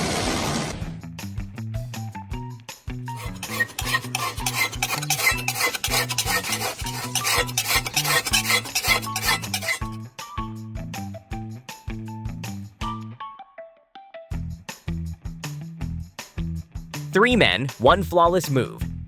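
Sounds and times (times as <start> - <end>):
background music with steady beat: 1.0 - 3.3, 9.9 - 13.3, 14.3 - 19.0
scraping rubbing noise: 3.2 - 10.0.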